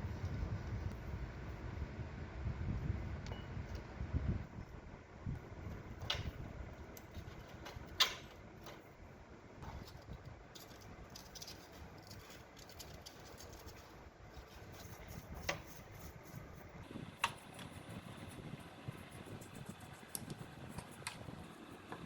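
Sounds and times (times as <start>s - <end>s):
light clicks and scratching: 5.7s - 8.9s, 9.6s - 21.3s.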